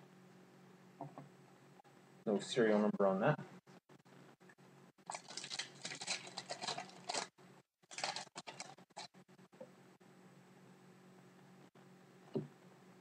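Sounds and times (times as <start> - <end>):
trading cards rustling: 5.1 - 9.1.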